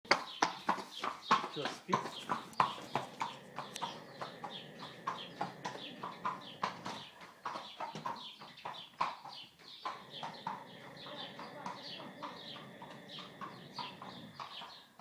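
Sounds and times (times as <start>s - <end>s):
pet snoring quickly: 2.1s - 8.3s, 9.3s - 15.0s.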